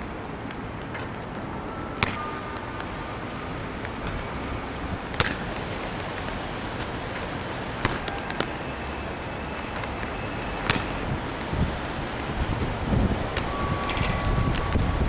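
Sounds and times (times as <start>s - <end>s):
wind on microphone: 10.2s - 15.0s.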